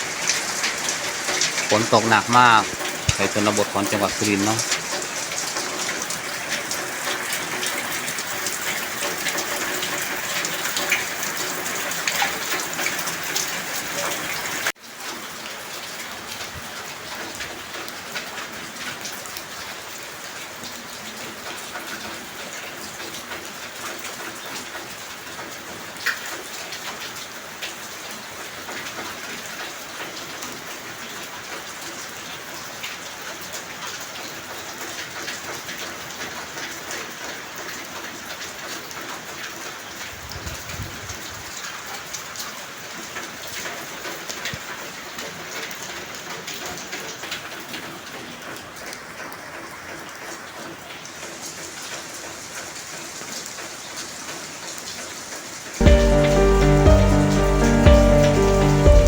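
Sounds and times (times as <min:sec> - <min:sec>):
heavy rain pouring: 0:00.0 - 0:59.0
raindrop ticks: 0:01.3 - 0:07.8.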